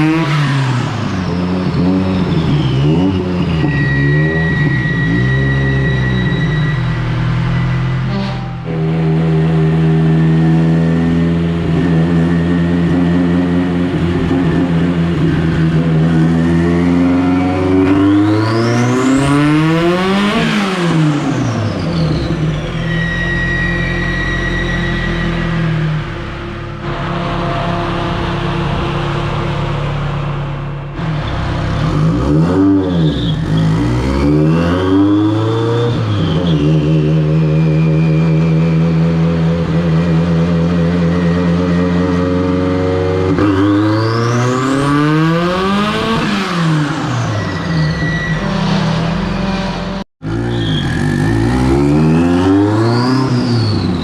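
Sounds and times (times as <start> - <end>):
car engine revving: 0.0 - 54.0
thin high whistle: 2.2 - 8.9.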